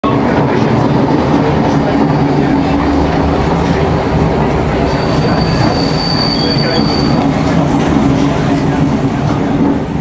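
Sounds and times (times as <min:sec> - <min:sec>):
train wheels rumbling on track: 0:00.0 - 0:10.0
high wheel squeal: 0:04.8 - 0:07.6.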